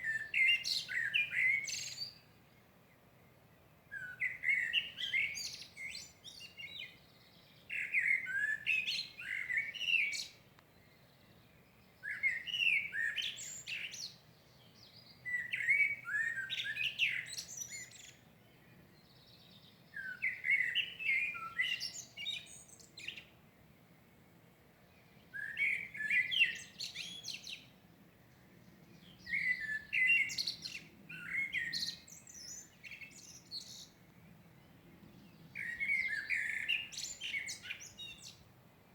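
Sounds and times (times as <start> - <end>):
songbird warbling: 35.3 - 38.4.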